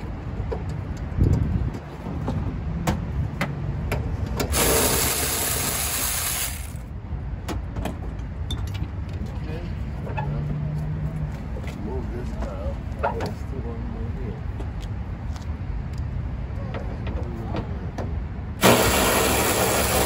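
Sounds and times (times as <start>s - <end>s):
wind rumble on microphone: 0.0s - 4.5s
loud rushing hiss: 4.5s - 6.8s, 18.6s - 20.0s.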